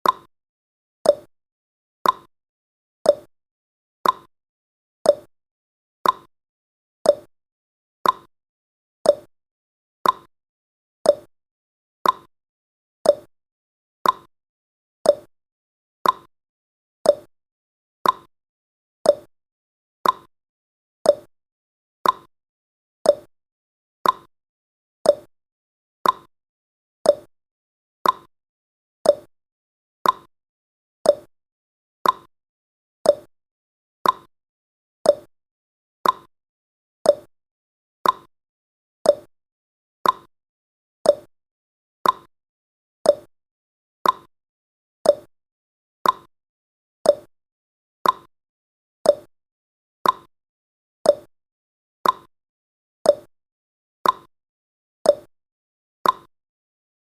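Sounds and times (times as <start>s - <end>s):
countdown timer ticking: 33.1s - 33.3s, 39.1s - 39.3s, 41.1s - 41.3s, 43.1s - 43.3s, 45.1s - 45.3s, 47.1s - 47.3s.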